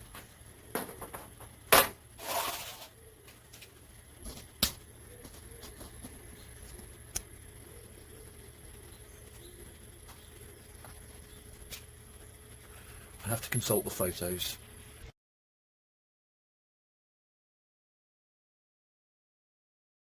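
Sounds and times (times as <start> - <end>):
low steady hum: 0.0 - 15.2.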